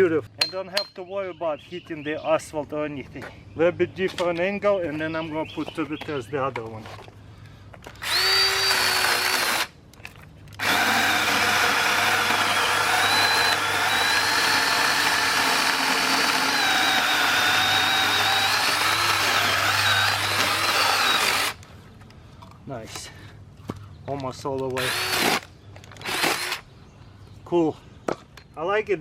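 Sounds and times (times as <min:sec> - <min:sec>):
electric chainsaw whining: 0:08.0 - 0:09.7, 0:10.6 - 0:21.6, 0:24.8 - 0:26.6.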